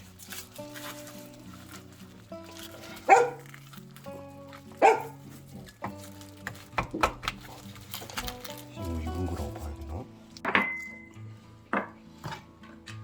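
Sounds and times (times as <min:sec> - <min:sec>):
background music: 0:00.0 - 0:13.0
dog barking: 0:03.0 - 0:03.5, 0:04.8 - 0:05.2.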